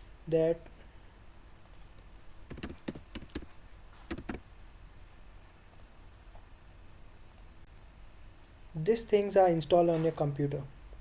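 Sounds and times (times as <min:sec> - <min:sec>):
computer keyboard keystrokes: 0:01.6 - 0:03.5, 0:04.1 - 0:04.4.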